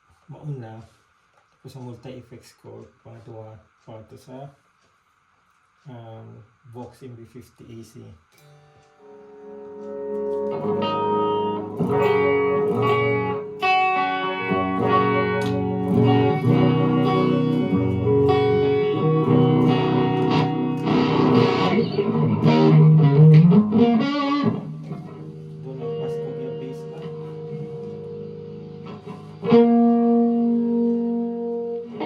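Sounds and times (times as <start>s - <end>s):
electric guitar notes and chords: 8.4s - 32.0s.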